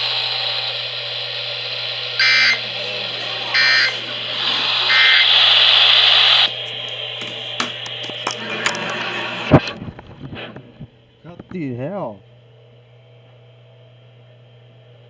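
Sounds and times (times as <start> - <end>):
buzzy digital data bursts: 2.2 - 6.5
radio static: 2.2 - 9.6.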